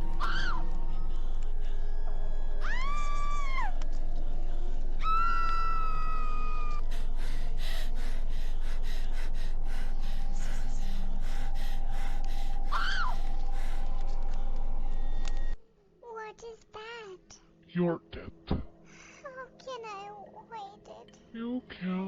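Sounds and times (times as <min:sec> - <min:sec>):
rising-and-falling cry: 0:00.0 - 0:01.0, 0:02.0 - 0:03.9, 0:05.0 - 0:08.0, 0:11.5 - 0:13.5
drawn-out wailing cry: 0:00.0 - 0:01.1, 0:11.4 - 0:13.4
steady low hum: 0:00.0 - 0:15.6.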